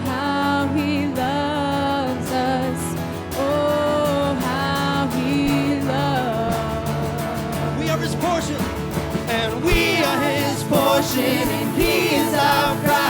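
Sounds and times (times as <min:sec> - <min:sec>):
band playing worship music: 0:05.8 - 0:13.0.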